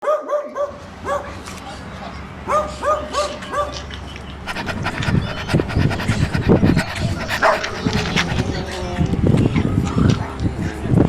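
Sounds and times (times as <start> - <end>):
dogs grunting and panting: 4.4 - 9.2
dog yipping: 4.5 - 8.6.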